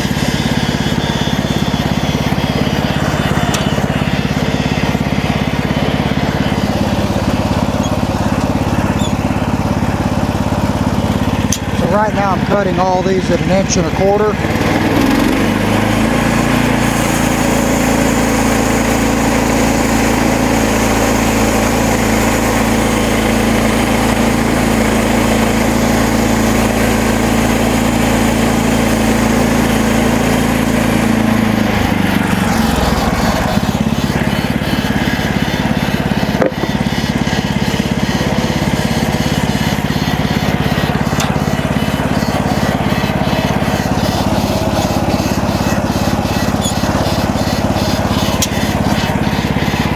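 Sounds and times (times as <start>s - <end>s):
saw blade cutting through log: 0.0s - 49.9s
small gasoline engine running: 0.0s - 49.9s.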